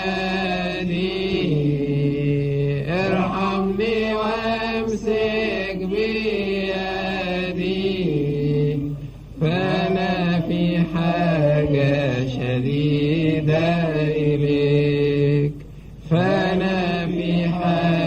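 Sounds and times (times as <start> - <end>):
man chanting a hymn: 0.0 - 18.0.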